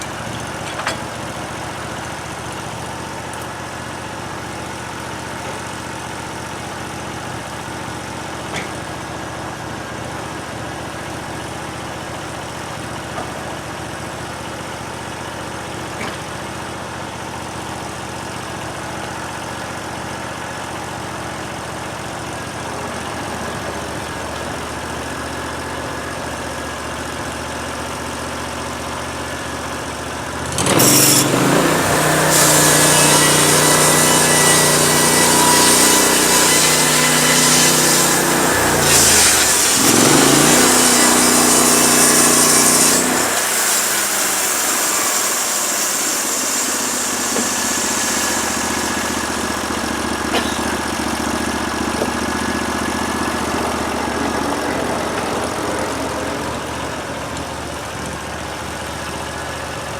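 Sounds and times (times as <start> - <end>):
sawmill engine running: 0.0 - 59.9
band saw blade hissing: 30.7 - 50.8.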